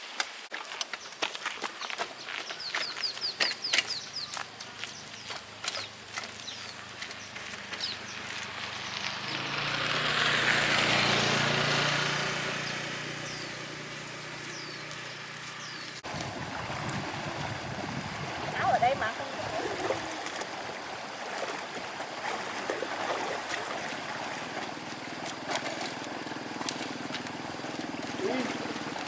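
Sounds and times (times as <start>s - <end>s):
bird chirps: 1.8s - 9.5s, 12.3s - 16.0s
motorbike engine passing by: 6.5s - 20.2s, 22.2s - 29.0s.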